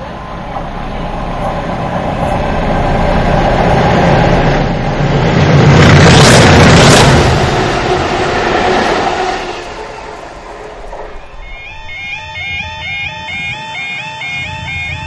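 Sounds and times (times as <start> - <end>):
diesel locomotive engines droning: 0.0 - 15.0.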